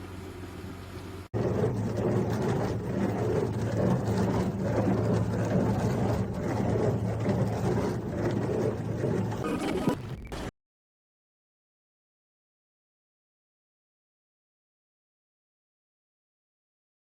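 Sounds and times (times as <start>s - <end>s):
churning wash noise: 0.0s - 10.5s
dishwasher motor hum: 0.0s - 10.5s.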